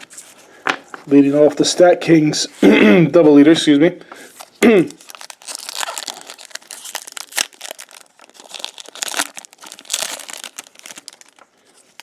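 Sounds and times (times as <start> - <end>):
card pack wrapper crinkling: 4.4 - 12.0.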